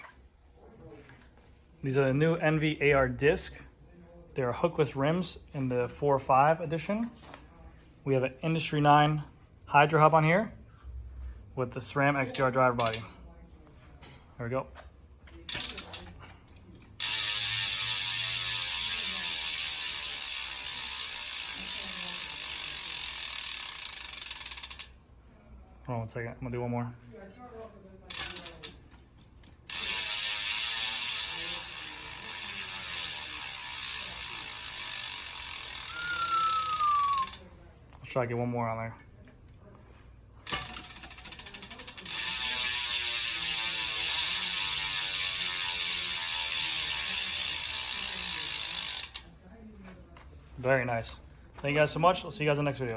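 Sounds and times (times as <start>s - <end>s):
bicycle hub ratcheting buzz: 12.2s - 13.2s, 15.4s - 16.3s, 16.9s - 25.1s, 28.0s - 28.8s, 29.4s - 37.5s, 40.4s - 49.4s.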